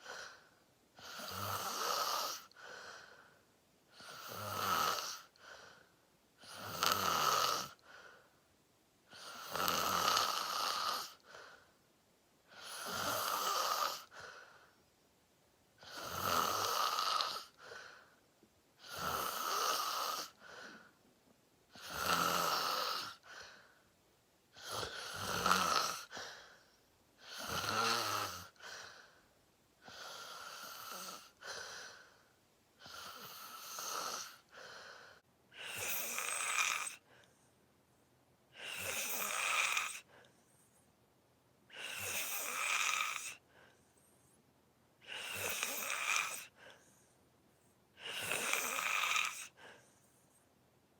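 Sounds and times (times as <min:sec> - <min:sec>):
person snoring: 0:01.0 - 0:02.7, 0:03.9 - 0:05.4, 0:06.4 - 0:07.8, 0:09.1 - 0:11.5, 0:12.5 - 0:14.4, 0:15.8 - 0:18.0, 0:18.8 - 0:20.9, 0:21.7 - 0:23.4, 0:24.5 - 0:26.6, 0:27.2 - 0:29.1, 0:29.8 - 0:32.2, 0:32.8 - 0:37.1, 0:38.6 - 0:40.1, 0:41.7 - 0:43.4, 0:45.0 - 0:46.6, 0:48.0 - 0:49.8.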